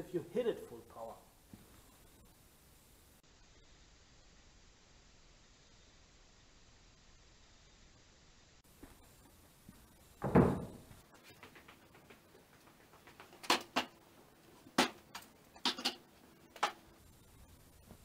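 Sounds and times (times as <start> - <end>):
dull thud: 10.2 - 10.9
sharp knocks and clacks: 10.2 - 14.0, 14.7 - 16.8.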